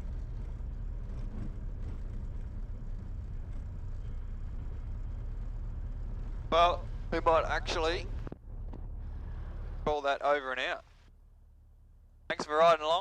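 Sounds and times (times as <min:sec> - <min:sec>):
aircraft piston engine idling: 0:00.0 - 0:08.3.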